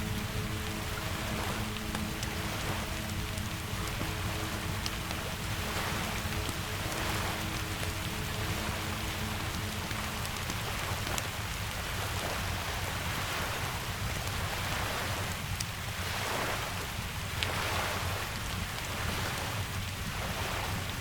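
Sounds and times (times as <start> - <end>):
wood fire crackling: 0.0 - 13.2
steady rain falling: 0.0 - 21.0.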